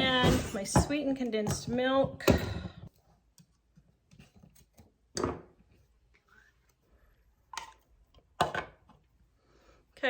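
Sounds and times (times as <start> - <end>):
kitchen items knocking on counter: 0.0 - 2.9.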